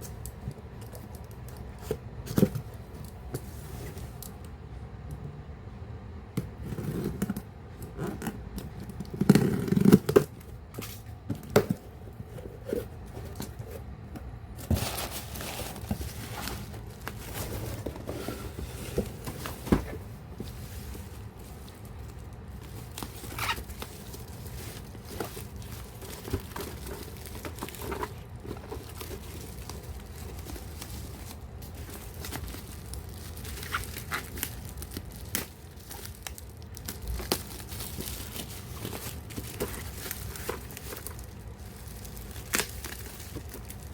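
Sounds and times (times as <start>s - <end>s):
plastic packaging crinkling: 14.4s - 43.9s.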